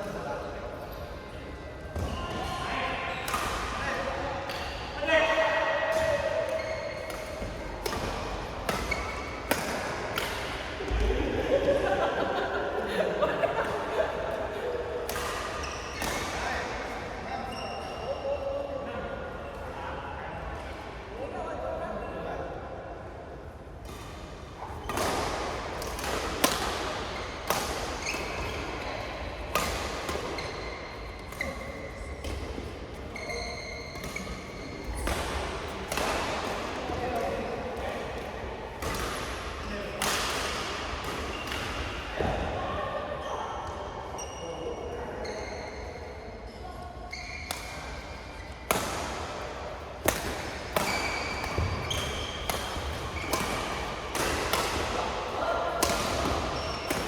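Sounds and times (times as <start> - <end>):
shoes squeaking on court floor: 6.5 - 9.7, 17.3 - 18.2, 27.2 - 35.3, 44.2 - 48.8, 50.4 - 55.0, 56.1 - 57.0
racket hitting shuttlecock: 7.0 - 11.1, 24.9 - 28.8, 48.7 - 57.0.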